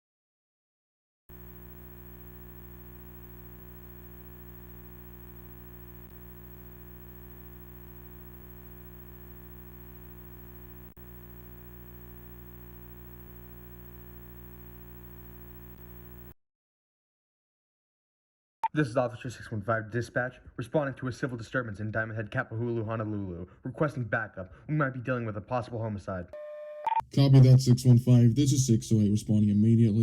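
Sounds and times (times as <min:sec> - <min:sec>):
low hum: 0:01.3 - 0:16.3.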